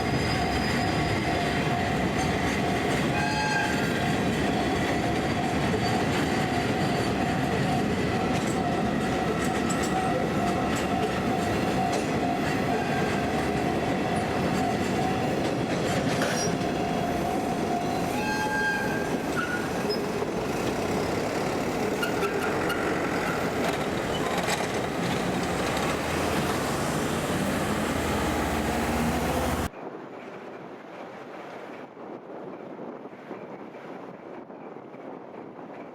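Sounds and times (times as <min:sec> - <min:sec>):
train wheels clacking: 0:00.0 - 0:27.8
wind noise: 0:28.8 - 0:35.9.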